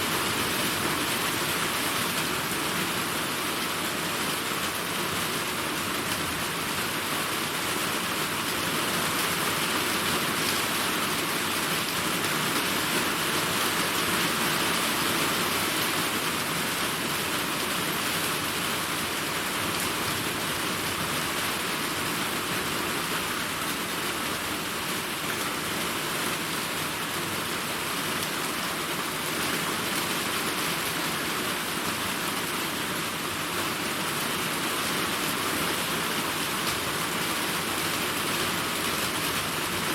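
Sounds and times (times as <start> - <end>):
heavy rain pattering: 0.0 - 39.9.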